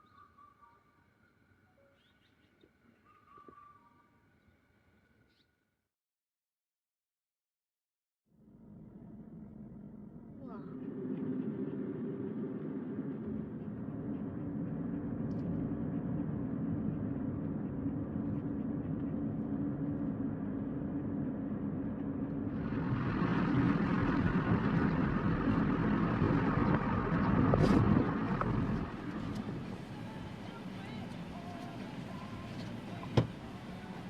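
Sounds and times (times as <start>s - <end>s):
car engine humming: 10.8s - 34.0s.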